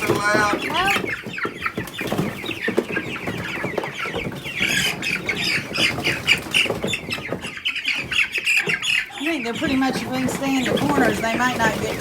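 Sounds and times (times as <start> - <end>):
chickens cheeping and squawking: 0.0 - 12.0.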